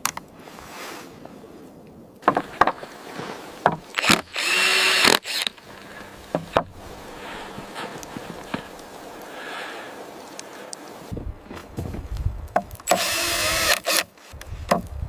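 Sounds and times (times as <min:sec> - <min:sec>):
drill running: 0:04.0 - 0:05.5, 0:12.9 - 0:14.1.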